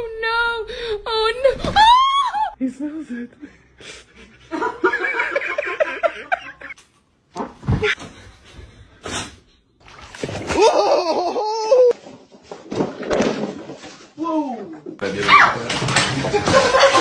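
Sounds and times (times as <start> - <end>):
person laughing: 10.6 - 12.0.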